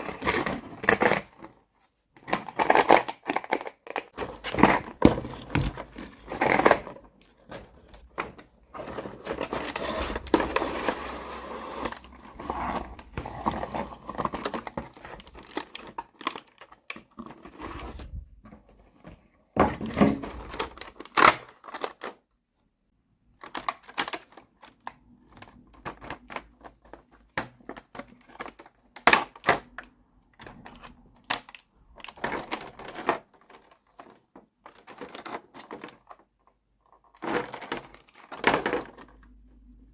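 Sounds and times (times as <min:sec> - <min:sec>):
plastic packaging crinkling: 0:02.2 - 0:18.1, 0:19.8 - 0:22.2, 0:30.6 - 0:36.2, 0:36.9 - 0:39.4.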